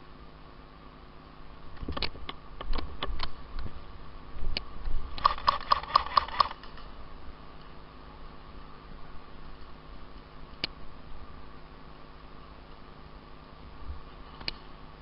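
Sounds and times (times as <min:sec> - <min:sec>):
sharp clicks: 0:04.6 - 0:06.8.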